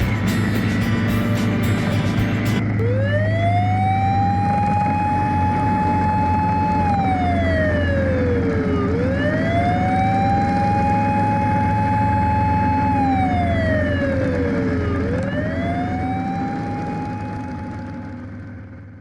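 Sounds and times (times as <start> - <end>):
steady low hum: 0.0 - 3.5
siren wailing: 2.3 - 18.3.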